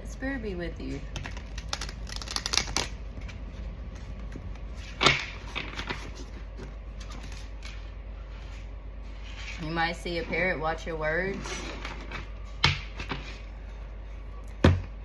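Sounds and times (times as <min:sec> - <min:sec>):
cards being shuffled: 0:01.1 - 0:08.6.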